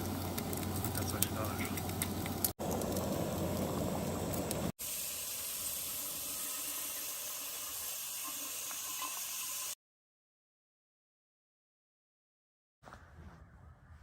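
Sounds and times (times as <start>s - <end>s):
camp stove hissing: 0.0s - 9.8s.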